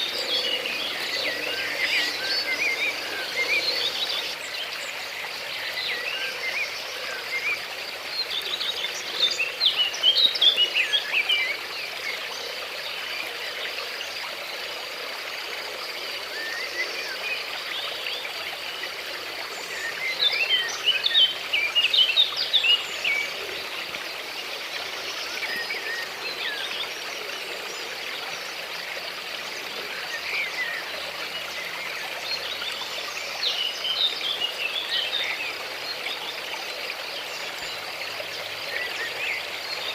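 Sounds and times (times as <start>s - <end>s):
birds twittering: 0.0s - 4.4s
flowing water hiss: 0.0s - 39.9s.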